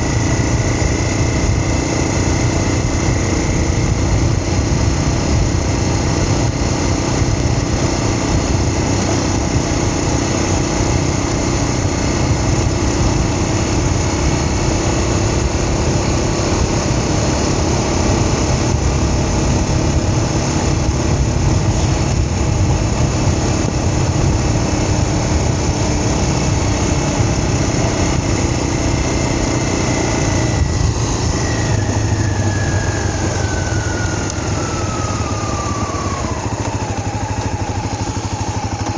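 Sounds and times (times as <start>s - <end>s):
road noise: 0.0s - 38.9s
vehicle engine running: 0.0s - 38.9s
whine falling in pitch: 29.7s - 38.9s.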